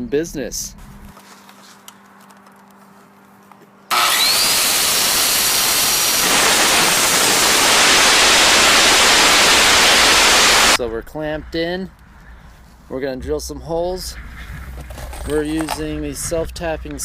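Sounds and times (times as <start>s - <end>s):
power saw cutting wood: 3.9s - 10.8s.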